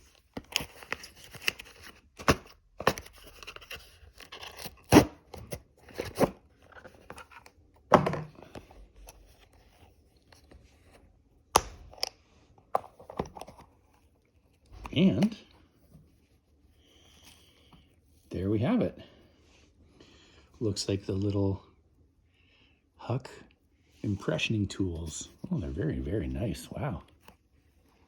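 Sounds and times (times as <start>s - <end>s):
packaging scraping and rustling: 0.0s - 7.6s.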